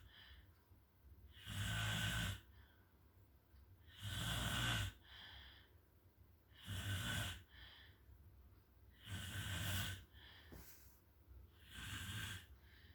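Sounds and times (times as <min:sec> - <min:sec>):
person snoring: 0:01.3 - 0:02.5, 0:03.9 - 0:05.0, 0:06.6 - 0:07.5, 0:09.0 - 0:10.0, 0:11.6 - 0:12.5
soft breath: 0:05.0 - 0:05.9, 0:07.4 - 0:08.2, 0:09.6 - 0:11.1, 0:12.0 - 0:12.9.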